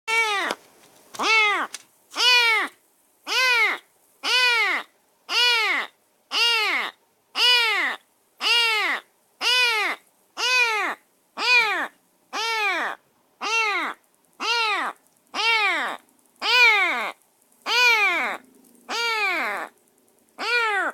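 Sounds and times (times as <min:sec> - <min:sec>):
kitten meowing: 0:01.2 - 0:02.7, 0:03.3 - 0:17.1.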